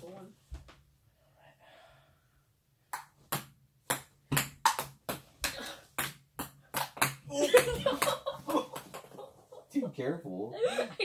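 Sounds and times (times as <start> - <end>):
ping pong ball bouncing: 2.9 - 8.2.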